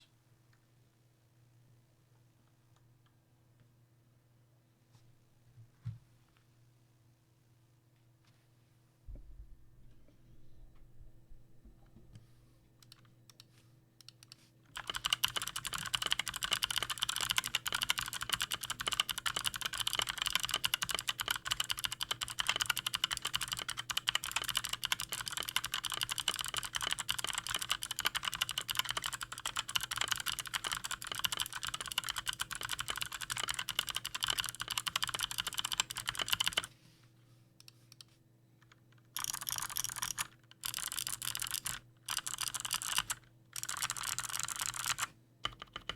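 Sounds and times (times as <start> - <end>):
fast typing on mechanical keyboard: 14.0 - 36.7, 38.6 - 45.9.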